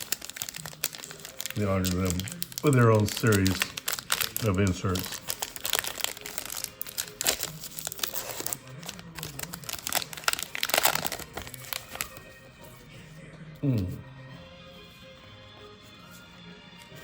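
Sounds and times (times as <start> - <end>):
wrapper and cards crinkling: 0.0 - 12.4.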